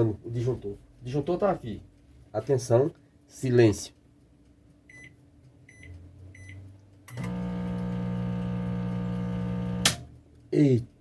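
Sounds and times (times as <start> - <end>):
microwave electrical hum: 3.0 - 11.0
microwave keypad beeps: 4.9 - 7.7.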